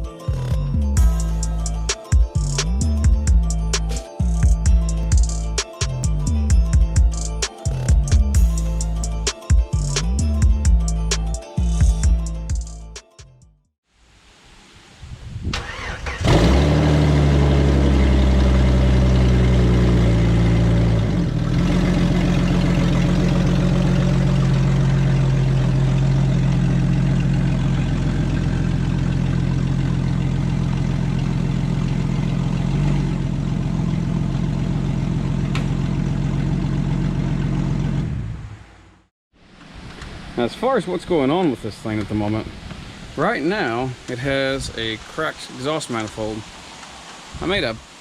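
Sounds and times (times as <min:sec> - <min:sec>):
car engine starting and idling: 0:15.5 - 0:39.1.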